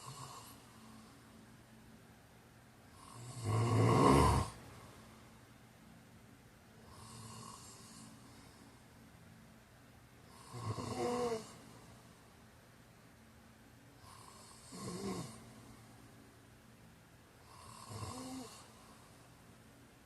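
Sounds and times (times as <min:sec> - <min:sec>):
man snoring: 0:00.0 - 0:00.6, 0:03.0 - 0:04.6, 0:06.9 - 0:08.1, 0:10.3 - 0:11.6, 0:14.0 - 0:15.4, 0:17.4 - 0:18.8
faint breath: 0:06.8 - 0:09.0.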